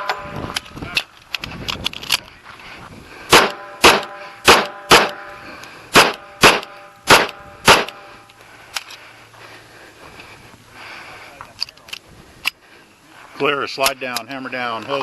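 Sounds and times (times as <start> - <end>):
rapid pistol shots: 3.3 - 5.3, 5.9 - 8.1.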